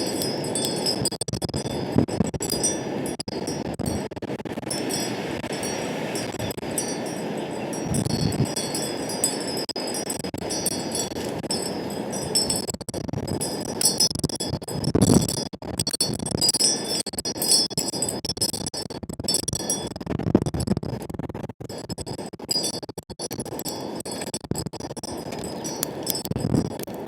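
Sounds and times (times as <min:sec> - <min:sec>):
wind chimes tinkling: 0:00.0 - 0:14.6, 0:16.6 - 0:18.2, 0:25.0 - 0:26.5
wind blowing on microphone: 0:00.0 - 0:22.6, 0:23.7 - 0:27.0.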